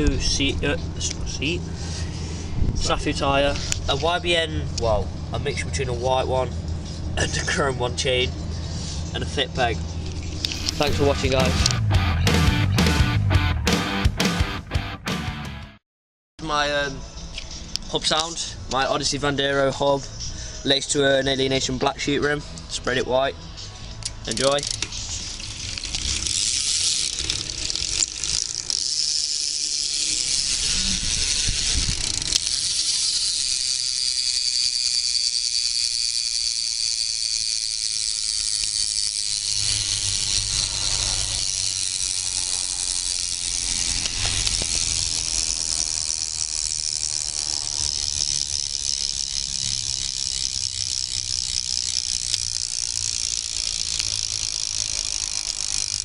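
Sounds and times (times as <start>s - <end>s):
bicycle hub freewheel clicking: 8.4s - 12.1s, 23.9s - 56.0s.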